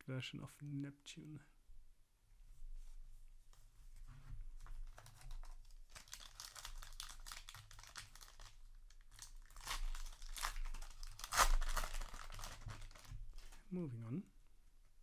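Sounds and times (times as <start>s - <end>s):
foil wrapper crinkling and tearing: 4.6s - 13.6s.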